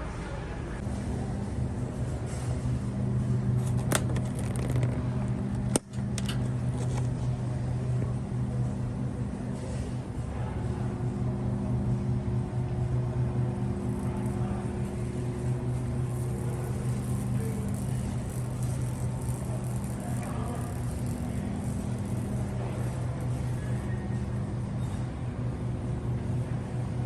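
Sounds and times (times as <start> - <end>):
low mechanical hum: 0.0 - 27.0.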